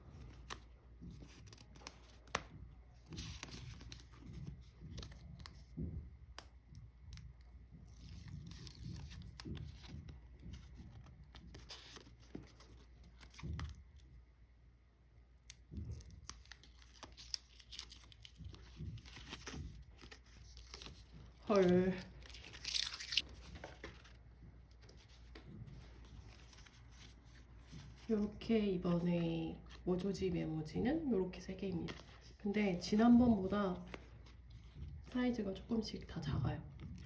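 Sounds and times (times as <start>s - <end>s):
packaging tearing and crinkling: 15.9s - 23.3s.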